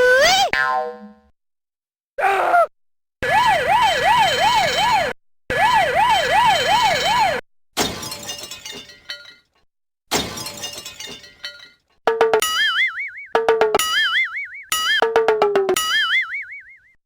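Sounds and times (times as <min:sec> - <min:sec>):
siren wailing: 0:03.2 - 0:07.4
crashing breaking clatter: 0:06.4 - 0:09.5, 0:10.1 - 0:11.8.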